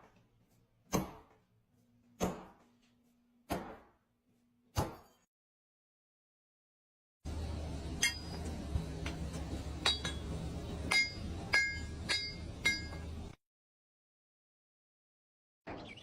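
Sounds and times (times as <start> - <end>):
steady low hum: 7.3 - 13.4
metal clinking on metal: 8.0 - 8.5, 9.8 - 10.3, 10.9 - 13.1.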